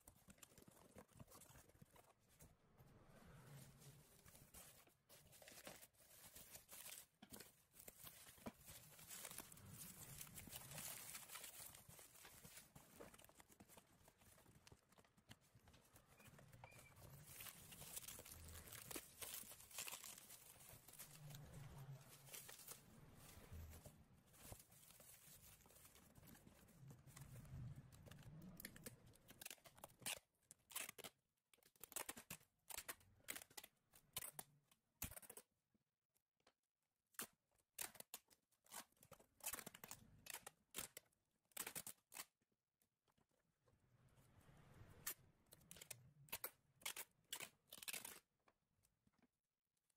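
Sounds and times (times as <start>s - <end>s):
rustling and scraping: 0.0s - 30.3s.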